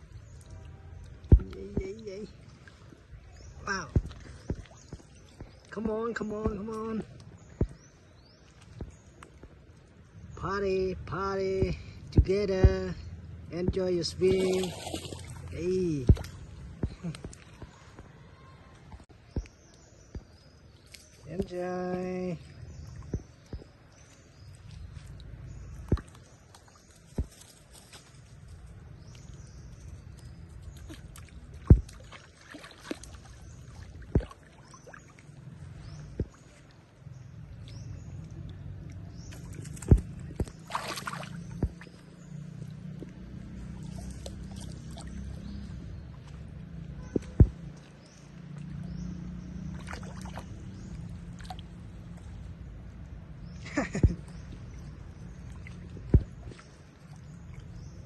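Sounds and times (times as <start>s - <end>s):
water sloshing and splashing: 0.0s - 10.4s, 11.4s - 58.0s
sharp splash and thump: 1.2s - 2.0s, 3.8s - 5.8s, 13.7s - 18.1s, 25.7s - 28.2s, 30.7s - 35.1s, 39.3s - 45.4s, 47.0s - 52.2s, 53.8s - 56.8s.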